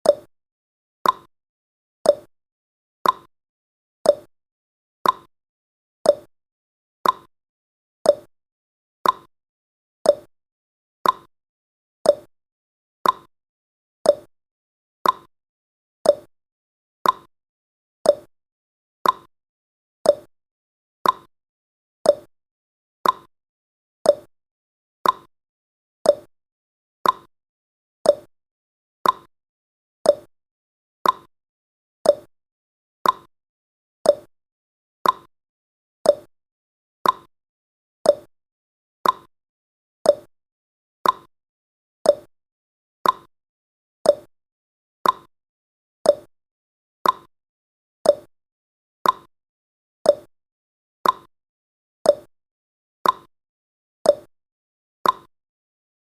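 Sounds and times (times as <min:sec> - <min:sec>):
clock ticking: 0:29.0 - 0:29.3, 0:33.0 - 0:33.3, 0:35.0 - 0:35.3, 0:37.0 - 0:37.3, 0:39.0 - 0:39.3, 0:41.0 - 0:41.3, 0:43.0 - 0:43.3, 0:45.0 - 0:45.3, 0:47.0 - 0:47.3, 0:55.0 - 0:55.3.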